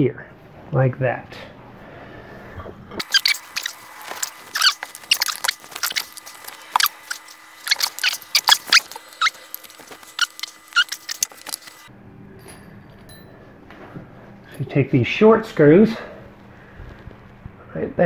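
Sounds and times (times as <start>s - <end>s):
wood squeaking: 3.0s - 11.9s
wooden parts clicking and knocking: 3.0s - 11.9s.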